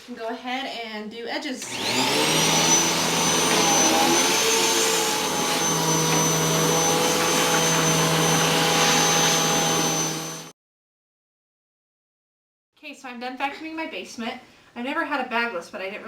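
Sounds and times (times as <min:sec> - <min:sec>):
upright vacuum cleaner running: 0:01.6 - 0:10.5.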